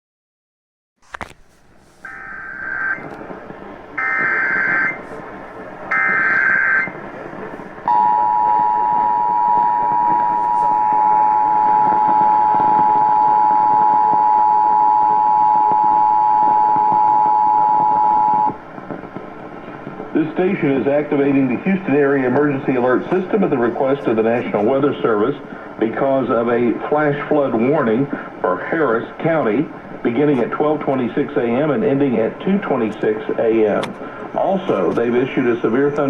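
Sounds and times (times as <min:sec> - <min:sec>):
radio hiss: 0:01.0 - 0:36.0
screechy digital header tones: 0:02.0 - 0:03.1, 0:04.0 - 0:05.0, 0:05.9 - 0:07.0.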